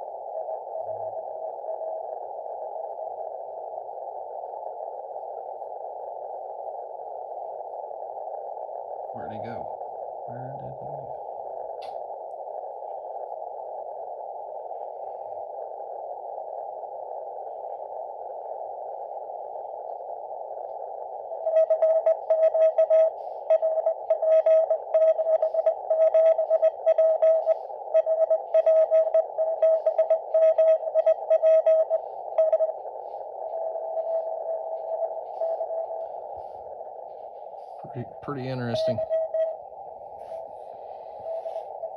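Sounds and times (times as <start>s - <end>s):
radio band hiss: 9.0s - 11.9s, 21.4s - 41.9s
morse code tone: 21.5s - 32.8s, 37.8s - 39.6s.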